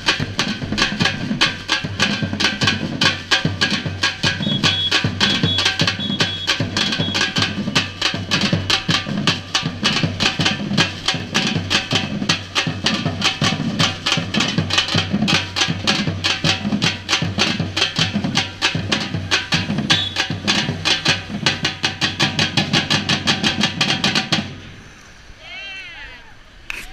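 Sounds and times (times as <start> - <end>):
drum ensemble fast beat: 0.0 - 24.6.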